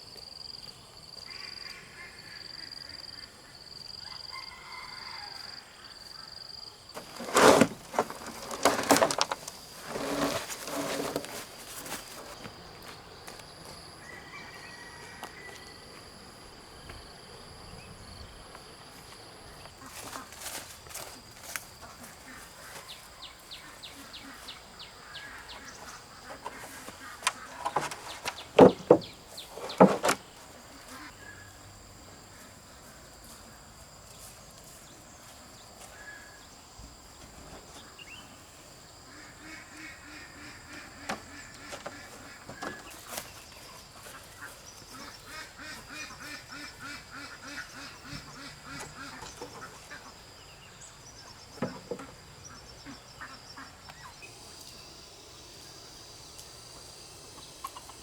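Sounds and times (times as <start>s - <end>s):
poultry calling: 21.8s - 31.5s, 39.1s - 50.2s.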